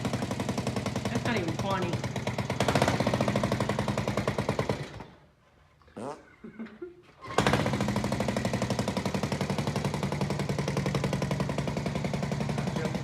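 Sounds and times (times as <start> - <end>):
single-cylinder engine idling: 0.0 - 5.2, 7.3 - 13.0.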